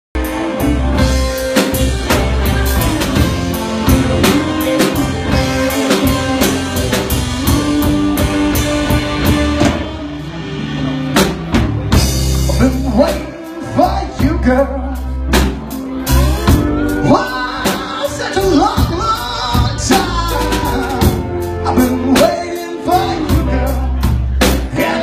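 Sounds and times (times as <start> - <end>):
blues rock band playing: 0.2 - 25.0
drum kit beat: 0.2 - 25.0.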